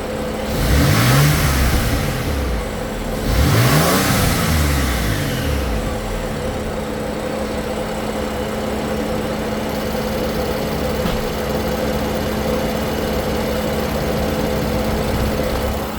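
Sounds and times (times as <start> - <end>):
car engine idling: 0.0 - 15.9
constant droning tone: 5.2 - 15.9.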